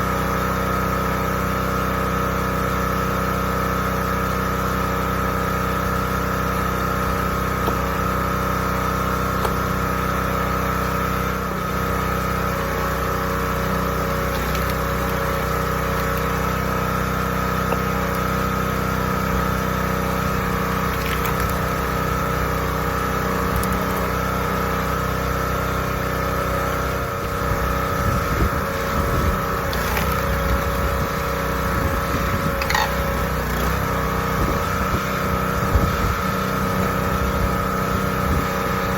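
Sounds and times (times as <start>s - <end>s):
gas engine running: 0.0s - 38.9s
wind buffeting microphone: 34.4s - 36.3s.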